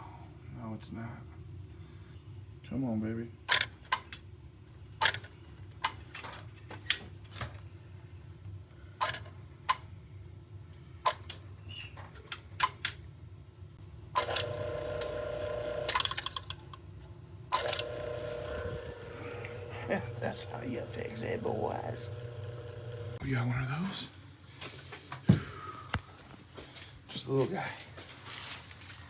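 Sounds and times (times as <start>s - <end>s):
pump humming: 14.2s - 16.1s, 17.6s - 23.2s.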